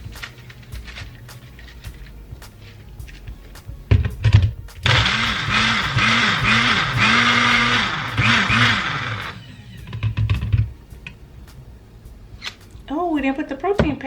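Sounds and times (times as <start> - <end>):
blender motor crushing ice: 4.8 - 10.1
low knocks: 13.8 - 14.0.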